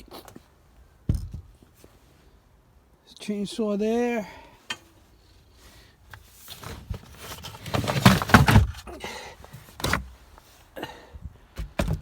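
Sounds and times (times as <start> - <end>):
items clunking and scraping in a box: 6.1 - 10.4.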